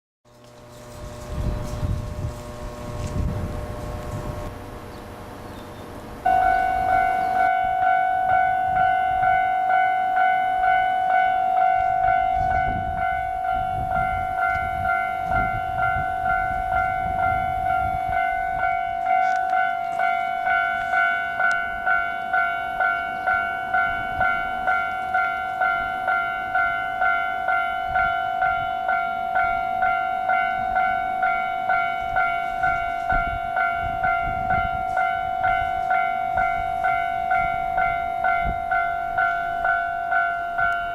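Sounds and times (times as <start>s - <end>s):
level crossing warning alarm: 0.3s - 40.9s
low rumbling: 0.6s - 9.8s.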